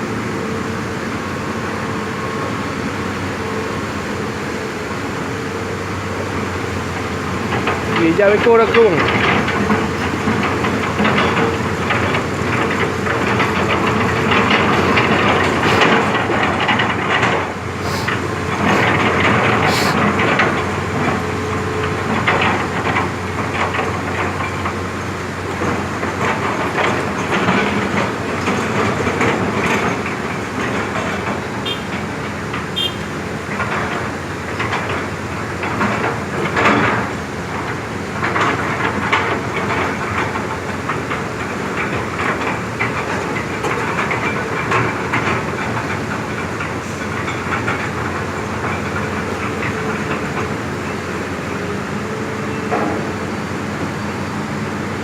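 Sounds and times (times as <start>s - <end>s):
heavy diesel machinery running: 0.0s - 55.0s
metallic clanks and knocks: 6.4s - 51.8s.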